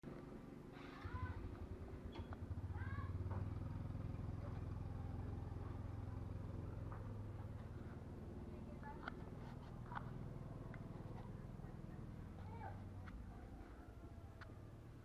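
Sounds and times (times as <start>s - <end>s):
low motor hum: 0.1s - 15.0s.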